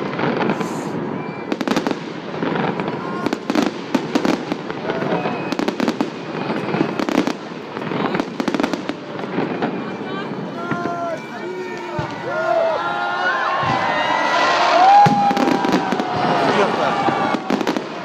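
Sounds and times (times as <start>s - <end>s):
crowd noise: 0.0s - 18.0s
fireworks bangs: 0.0s - 18.0s.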